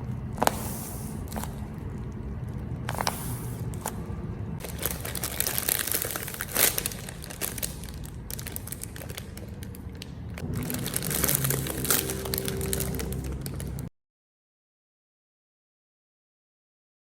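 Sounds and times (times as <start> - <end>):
paper crinkling: 0.3 - 13.9.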